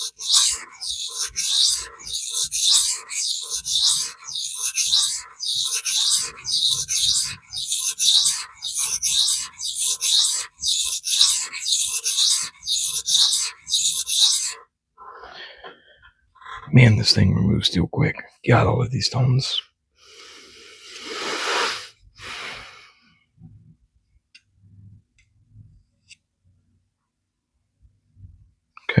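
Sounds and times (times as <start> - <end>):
knife scraping on sharpening stone: 0.0 - 14.6.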